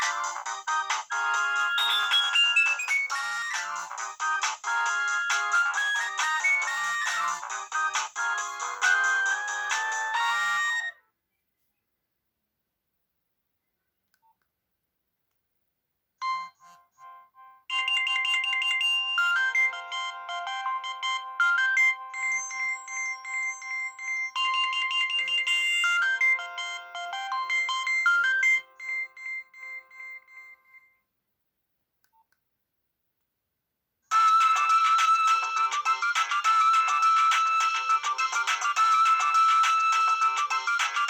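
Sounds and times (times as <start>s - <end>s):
polyphonic ringtone melody: 0.0s - 10.9s, 16.2s - 30.2s, 34.1s - 41.0s.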